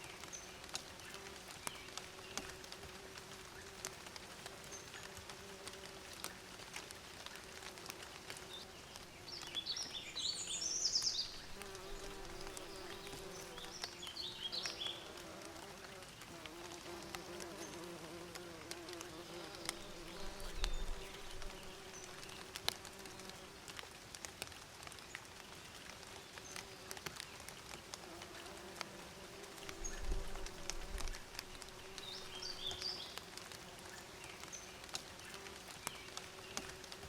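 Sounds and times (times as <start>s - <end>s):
bird chirping: 9.2s - 15.1s
bees buzzing: 11.4s - 23.3s.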